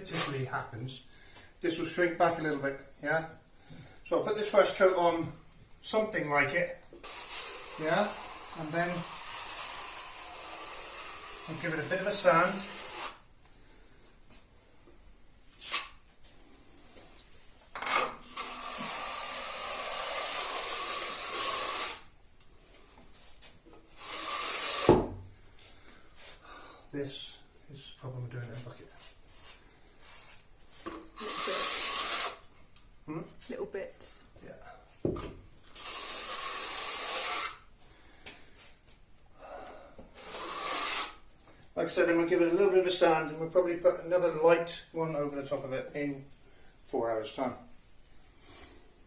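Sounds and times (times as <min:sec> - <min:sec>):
steel trowel scraping plasterboard: 0:00.0 - 0:00.4, 0:07.0 - 0:13.2, 0:17.8 - 0:22.1, 0:24.0 - 0:25.0, 0:30.9 - 0:32.4, 0:35.7 - 0:37.7, 0:40.2 - 0:41.2.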